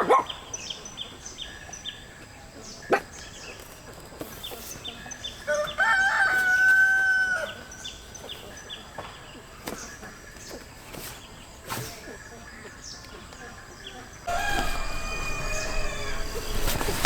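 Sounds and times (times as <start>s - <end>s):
rooster crowing: 5.5s - 7.8s, 14.3s - 17.0s
faint high chirps: 12.7s - 17.0s.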